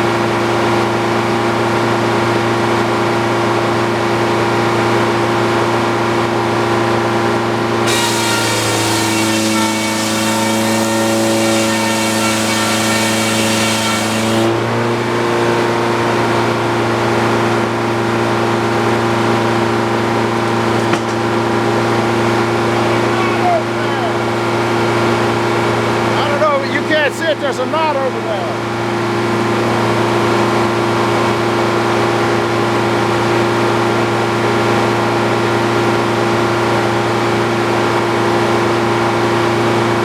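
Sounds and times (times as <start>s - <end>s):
circular sawmill running: 7.7s - 15.8s
saw blade cutting log: 7.8s - 14.8s.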